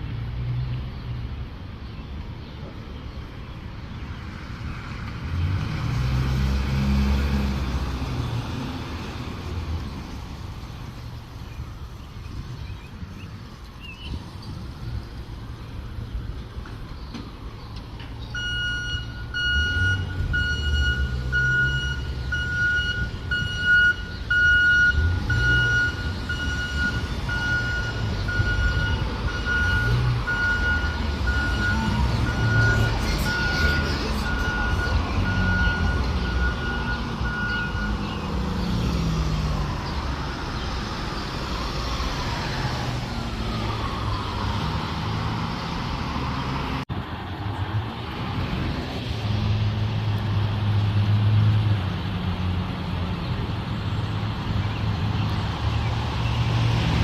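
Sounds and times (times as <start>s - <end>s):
backup alarm beeps: 18.4s - 38.0s.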